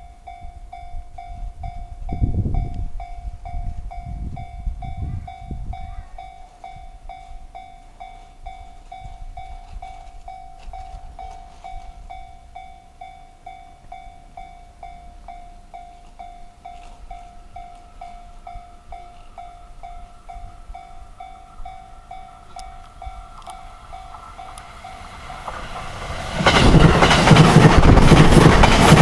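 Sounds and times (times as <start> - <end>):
level crossing bell ringing: 0.1 - 25.2
train wheels clacking on rails: 13.4 - 29.0.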